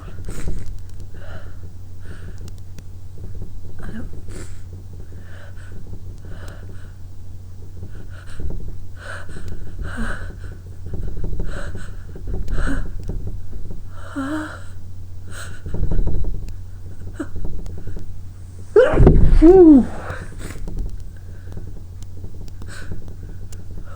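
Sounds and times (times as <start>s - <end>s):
woman sniffing and gasping: 18.6s - 20.6s.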